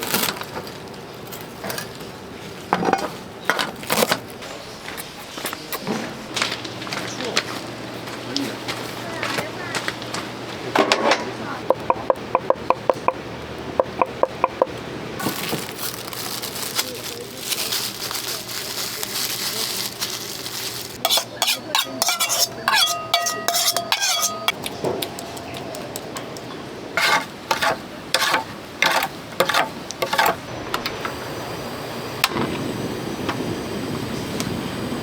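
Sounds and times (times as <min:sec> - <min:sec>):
utensils and dishes clinking: 0:02.7 - 0:04.2, 0:15.2 - 0:25.6, 0:27.0 - 0:30.4
steady hiss: 0:27.0 - 0:35.0.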